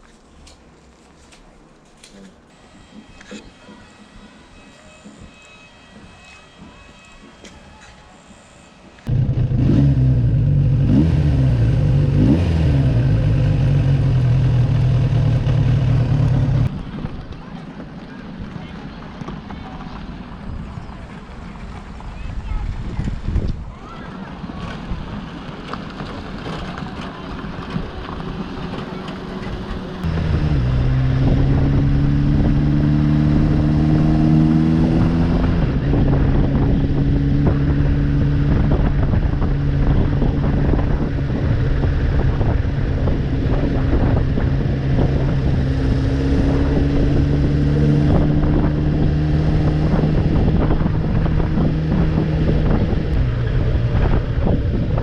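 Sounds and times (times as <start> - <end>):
motorcycle engine revving: 9.0 - 16.7, 26.0 - 55.0.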